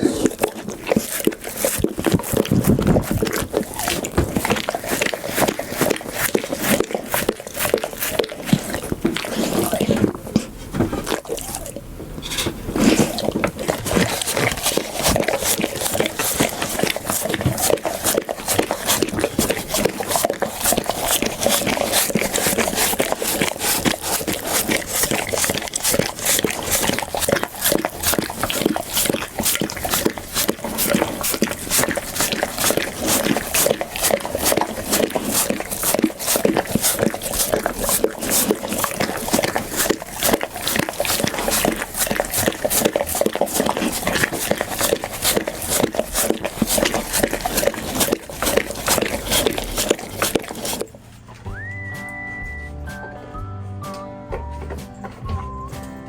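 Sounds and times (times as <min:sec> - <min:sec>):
dog eating noisily: 0:00.0 - 0:52.7.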